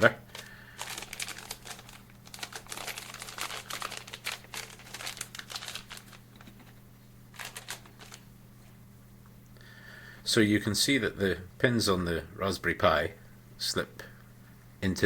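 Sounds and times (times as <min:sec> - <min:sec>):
plastic sachet crinkling: 0:00.0 - 0:08.3
steady low hum: 0:00.0 - 0:15.0.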